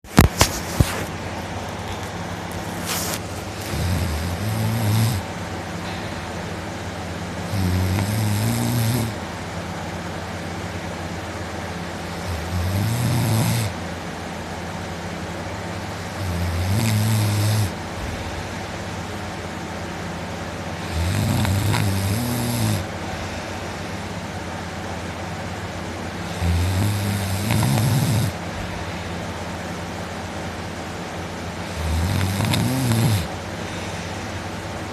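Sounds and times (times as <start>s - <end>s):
man snoring loudly: 3.6s - 5.3s, 7.4s - 9.2s, 12.0s - 13.8s, 15.9s - 17.8s, 20.8s - 22.9s, 26.2s - 28.4s, 31.6s - 33.4s.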